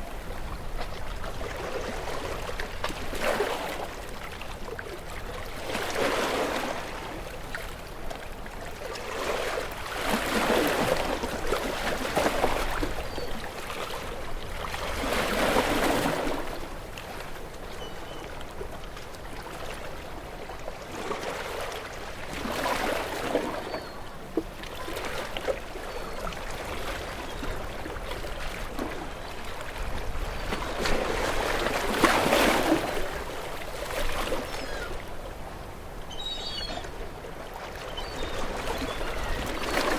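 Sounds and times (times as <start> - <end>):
waves breaking against rocks: 0.8 - 4.0, 5.6 - 7.6, 8.9 - 13.2, 14.7 - 16.6, 26.2 - 35.1.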